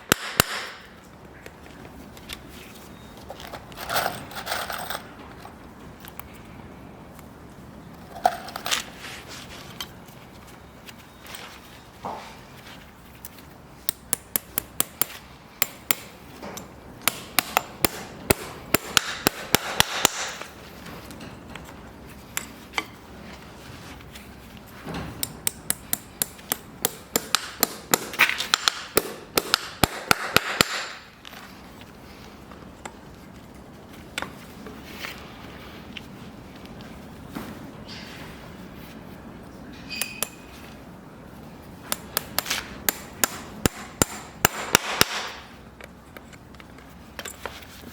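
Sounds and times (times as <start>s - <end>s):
hammer tapping on metal: 13.9s - 20.5s, 25.2s - 31.0s, 41.9s - 45.4s.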